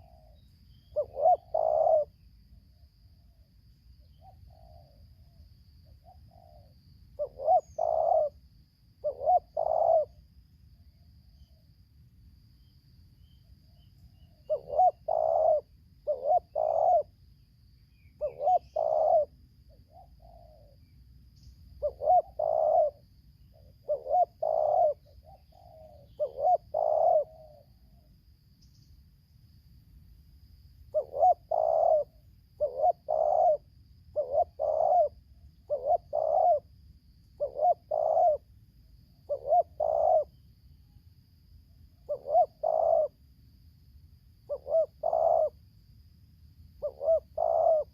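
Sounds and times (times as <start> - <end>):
doves cooing: 0.0 - 2.1, 6.0 - 8.4, 9.0 - 10.2, 14.3 - 17.1, 18.2 - 20.8, 21.8 - 27.9, 30.9 - 36.7, 37.4 - 38.5, 39.3 - 40.3, 42.1 - 43.2, 44.5 - 45.6, 46.8 - 47.9.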